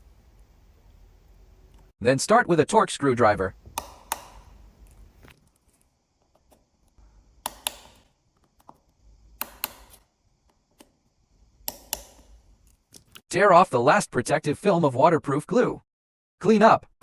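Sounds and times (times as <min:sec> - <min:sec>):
screwdriver clicks: 0:03.7 - 0:04.6, 0:07.4 - 0:08.8, 0:09.4 - 0:10.0, 0:11.7 - 0:13.2.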